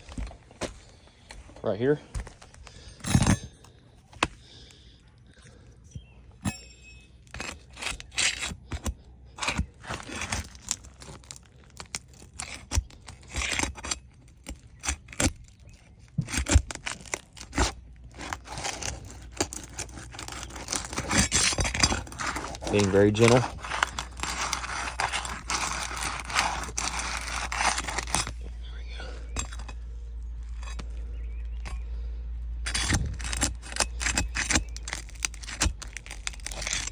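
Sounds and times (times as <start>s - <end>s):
roof shingles crackling and scraping: 7.2s - 31.6s, 32.6s - 36.9s.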